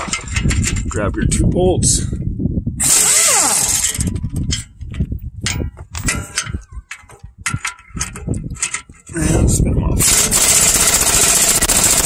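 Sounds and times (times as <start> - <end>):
metallic clanks of tools and bolts: 0.0 - 1.0, 3.2 - 9.2.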